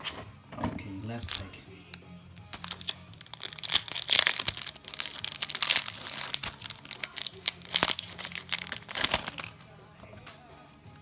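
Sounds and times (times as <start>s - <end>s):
foil wrapper crinkling and tearing: 1.2s - 1.5s, 2.5s - 9.6s.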